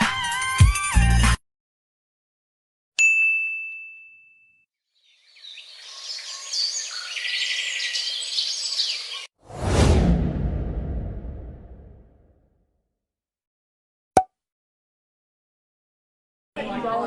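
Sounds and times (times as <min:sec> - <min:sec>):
bright ding: 0:03.0 - 0:04.6
birds chirping and twittering: 0:04.9 - 0:09.3
loud noisy hit: 0:09.6 - 0:12.2.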